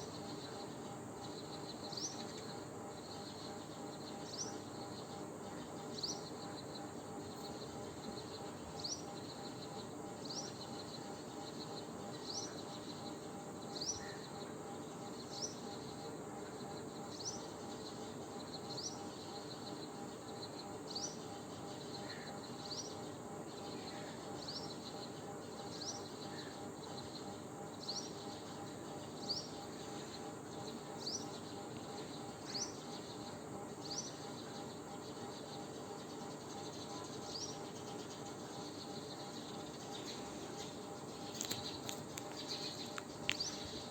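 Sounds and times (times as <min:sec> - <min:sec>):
steady low hum: 0:00.0 - 0:43.9.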